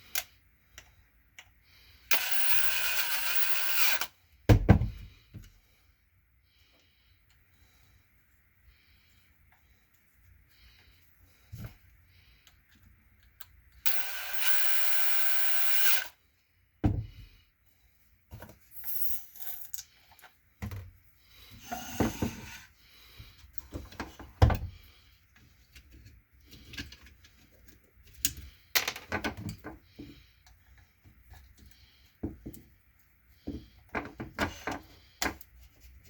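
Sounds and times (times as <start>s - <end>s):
drill motor whining: 2.1s - 4.1s, 13.9s - 16.1s.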